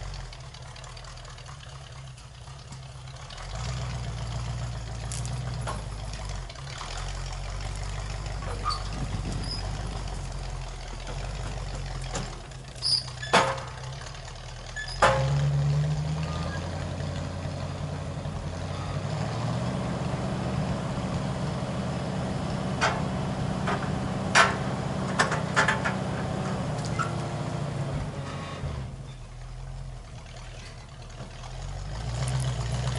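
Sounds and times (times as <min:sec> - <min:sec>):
skidder engine running: 0:00.0 - 0:32.9
sharp knocks: 0:22.8 - 0:26.6.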